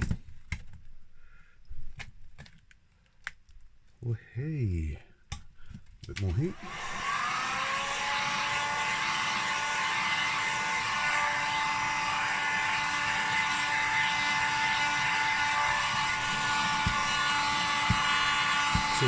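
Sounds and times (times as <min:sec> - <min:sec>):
hot-air blower whining: 0:06.2 - 0:19.0.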